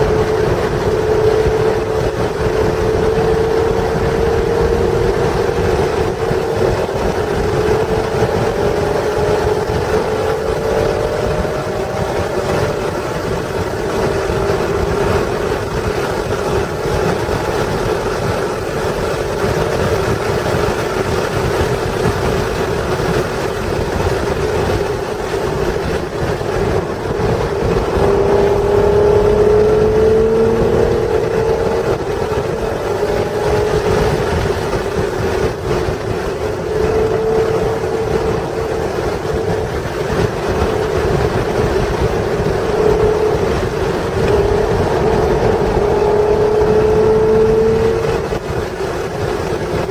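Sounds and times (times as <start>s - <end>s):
car engine accelerating: 0.0s - 49.9s
wind and road noise: 0.0s - 49.9s.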